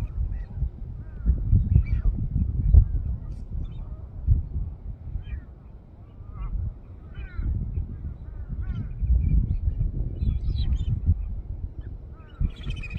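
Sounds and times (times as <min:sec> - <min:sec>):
birds calling: 0:05.2 - 0:12.9.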